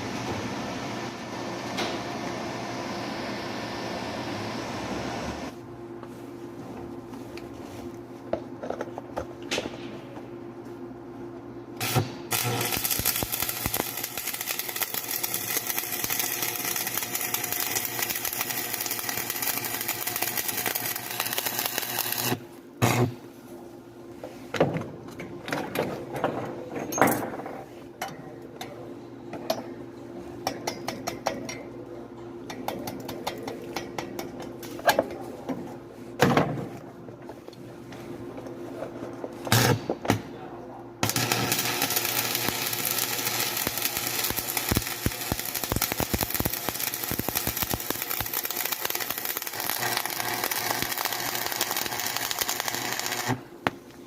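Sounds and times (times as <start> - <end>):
steady low hum: 0.0 - 54.0
welding arc crackling: 11.8 - 23.1, 41.0 - 53.4.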